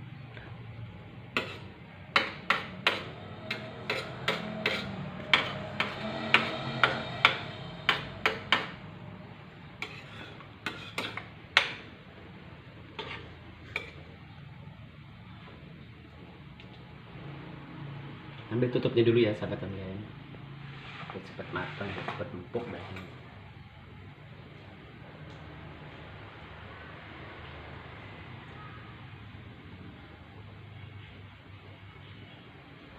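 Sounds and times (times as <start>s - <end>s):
utensil knocking and scraping a pot: 1.3s - 9.0s, 9.7s - 11.9s, 12.9s - 14.1s, 20.7s - 23.2s.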